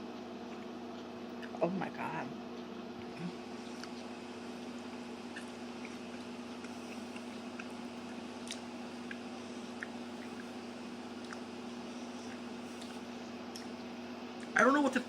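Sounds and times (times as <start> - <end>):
steady low hum: 0.0 - 15.0
chewing crunches: 3.0 - 10.6, 11.2 - 11.5.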